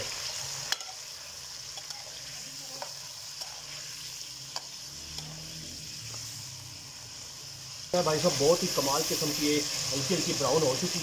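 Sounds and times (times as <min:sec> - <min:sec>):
chicken sizzling in hot oil: 0:00.0 - 0:11.0
spoon clicking against pot: 0:01.8 - 0:02.0.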